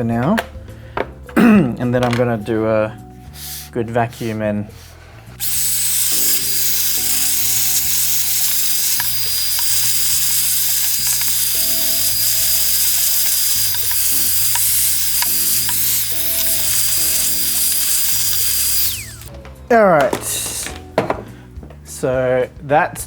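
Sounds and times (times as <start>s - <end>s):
background music: 0.0s - 23.0s
vacuum cleaner running: 5.4s - 19.3s.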